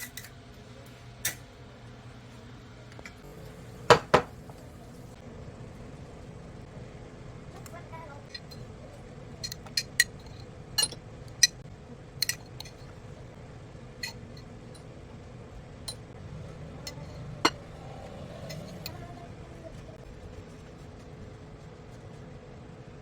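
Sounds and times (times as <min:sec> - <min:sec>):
faint steady hum: 0:00.0 - 0:23.0
dishes and glassware clinking: 0:09.4 - 0:11.6, 0:12.2 - 0:13.0, 0:14.0 - 0:14.9, 0:16.8 - 0:17.8.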